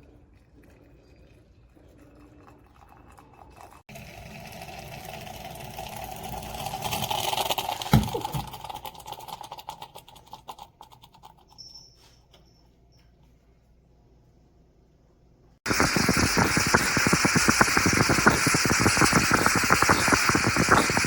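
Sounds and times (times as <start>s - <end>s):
moka pot hissing and sputtering: 2.4s - 10.1s, 15.6s - 21.0s.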